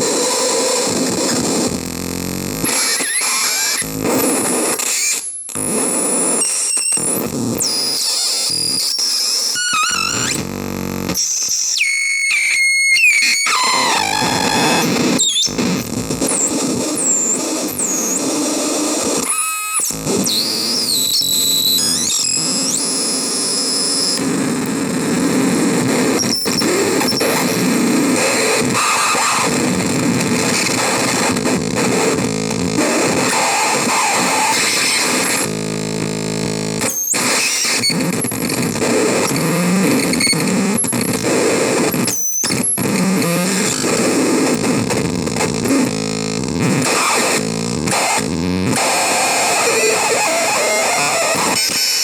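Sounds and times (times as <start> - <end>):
distorted noise synth squealing: 2.1 - 4.3, 4.9 - 24.2, 25.7 - 44.7, 45.3 - 52.0
buzzing tone: 9.6 - 18.2.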